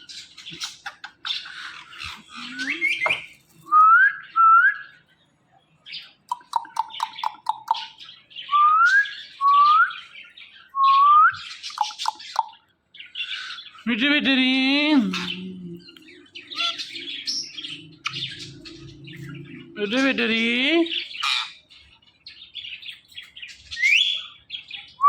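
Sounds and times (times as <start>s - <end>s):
parrot squawky chatter and clicks: 6.3s - 8.0s, 11.7s - 12.6s.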